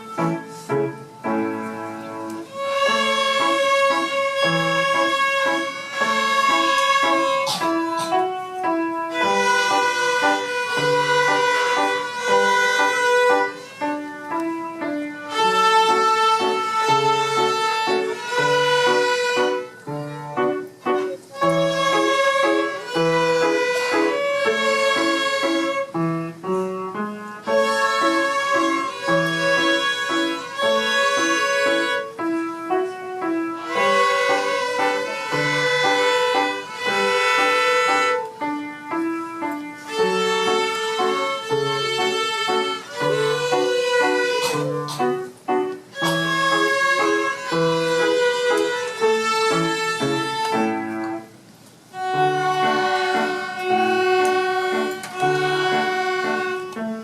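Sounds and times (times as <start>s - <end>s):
piano accompaniment: 0.0s - 57.0s
violas playing a tune: 0.0s - 57.0s.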